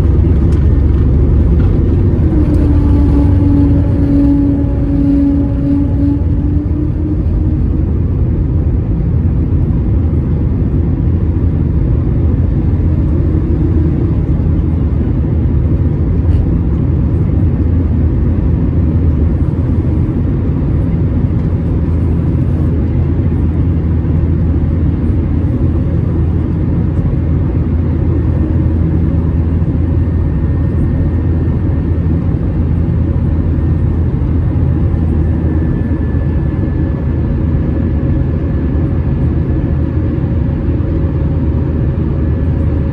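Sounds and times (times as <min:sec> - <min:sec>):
faint steady tones: 0:00.0 - 0:08.2
jet engine cabin rumble: 0:00.0 - 0:42.9.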